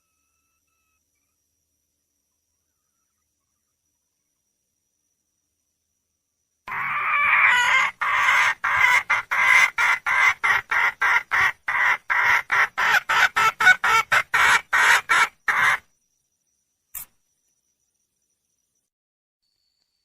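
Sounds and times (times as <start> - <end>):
hen clucking: 6.7 - 15.8
short click: 16.9 - 17.2.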